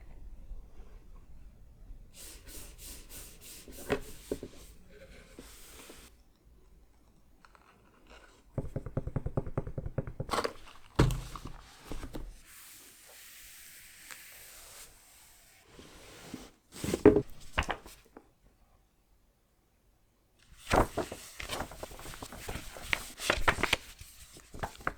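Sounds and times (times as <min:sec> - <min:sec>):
soft sliding hiss: 0:00.6 - 0:06.3, 0:11.3 - 0:18.1.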